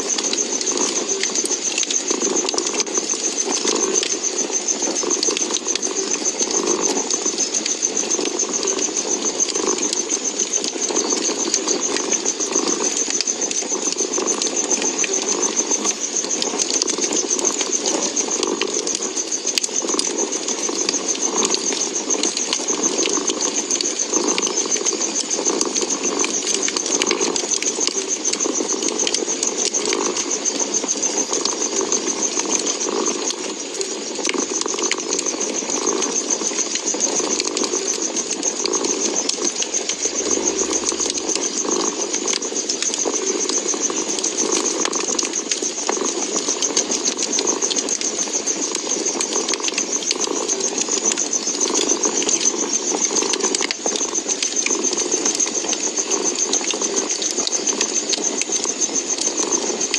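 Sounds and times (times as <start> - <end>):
wood fire crackling and popping: 0.0 - 59.9.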